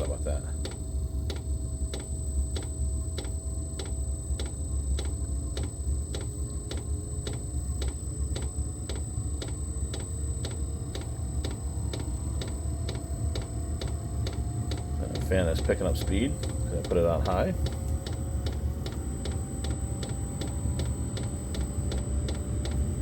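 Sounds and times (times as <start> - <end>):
fan whine: 0.0 - 23.0
heater blower rumble: 5.9 - 23.0.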